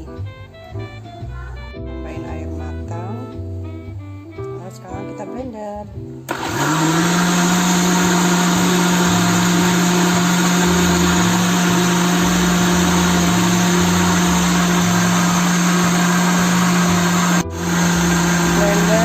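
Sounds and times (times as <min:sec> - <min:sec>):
electric blender humming: 0:06.3 - 0:19.0.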